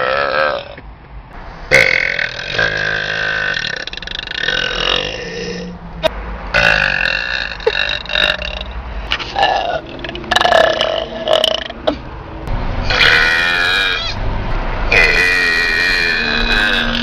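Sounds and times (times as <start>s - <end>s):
woman burping loudly: 1.7s - 5.7s, 6.6s - 12.0s, 14.9s - 17.0s.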